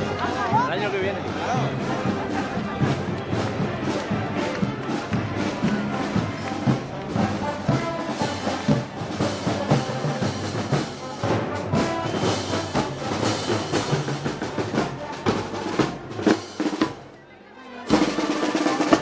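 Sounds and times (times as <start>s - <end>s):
brass band playing a march: 0.0s - 19.0s.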